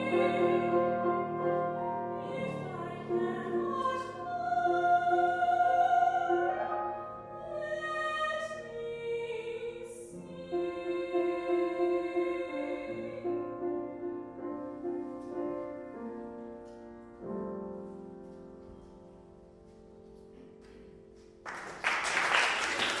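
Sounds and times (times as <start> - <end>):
piano chords: 0.0 - 21.5
audience applause: 21.4 - 23.0.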